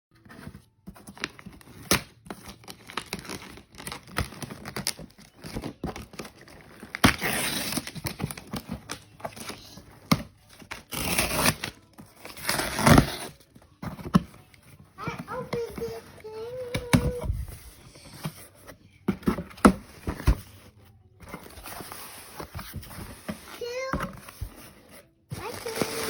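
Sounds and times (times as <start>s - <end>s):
packaging crinkled and torn: 1.2s - 9.8s.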